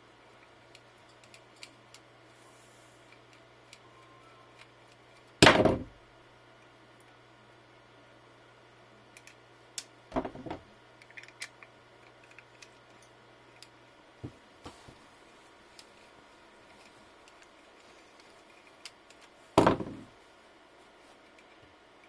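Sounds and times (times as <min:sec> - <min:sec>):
light clicks of metal parts: 0:00.4 - 0:02.1.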